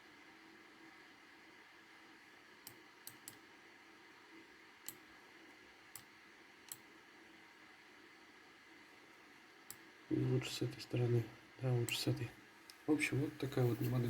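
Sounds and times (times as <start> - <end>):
faint room hiss: 0.0 - 14.0
computer mouse clicks: 2.6 - 3.4, 4.8 - 5.1, 5.9 - 6.9.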